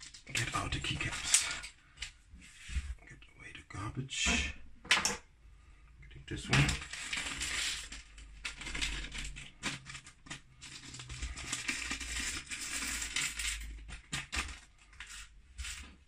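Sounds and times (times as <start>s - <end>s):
plastic parts clicking and clattering: 0.0s - 2.2s, 6.4s - 16.0s.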